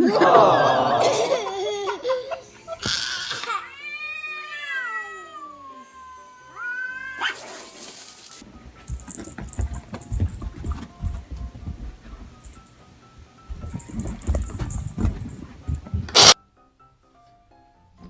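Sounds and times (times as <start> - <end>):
cat yowling: 2.8 - 7.6.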